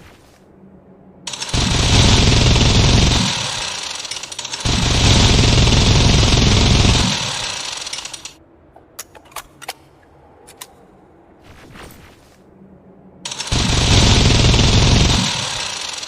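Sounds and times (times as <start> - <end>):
minigun firing bursts: 1.3 - 8.4, 13.3 - 16.0
sharp clicks: 1.3 - 8.4.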